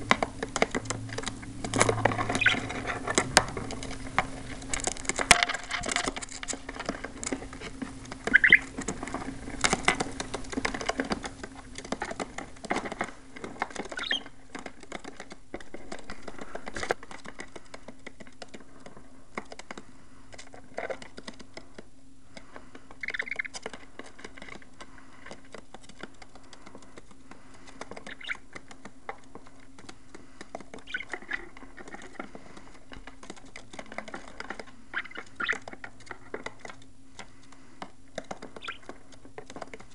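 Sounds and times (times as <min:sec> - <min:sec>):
budgerigars scrabbling: 0:01.0 - 0:05.0, 0:05.7 - 0:12.3, 0:13.8 - 0:14.4, 0:23.0 - 0:23.6, 0:27.6 - 0:28.5, 0:30.8 - 0:32.7, 0:34.1 - 0:36.6, 0:38.4 - 0:39.0
budgerigar chirps: 0:02.3 - 0:02.8, 0:08.3 - 0:08.7, 0:14.0 - 0:14.3, 0:28.1 - 0:28.4, 0:35.0 - 0:35.6, 0:38.6 - 0:38.9.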